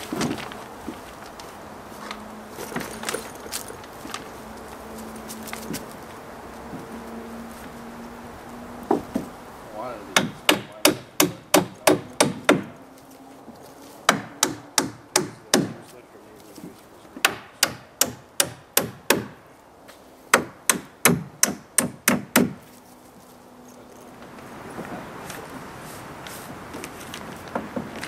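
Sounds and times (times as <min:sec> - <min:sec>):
hammer driving nails into wood: 0:10.2 - 0:12.8, 0:14.1 - 0:15.8, 0:17.2 - 0:19.4, 0:20.3 - 0:22.6.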